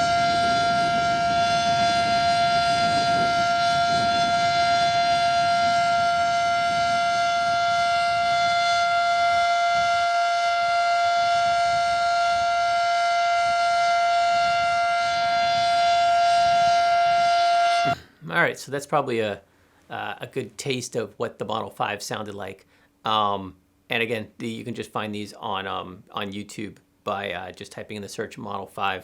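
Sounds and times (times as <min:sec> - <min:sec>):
siren steady high tone: 0:00.0 - 0:18.0
low rumbling noise: 0:00.0 - 0:18.4.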